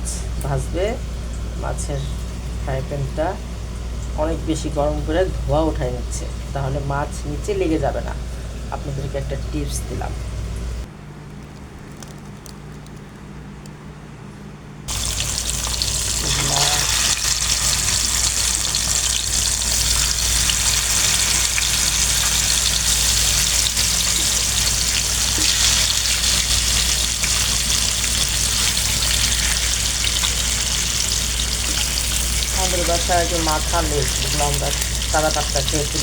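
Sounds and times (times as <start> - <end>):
fish sizzling in hot oil: 14.9 - 36.0.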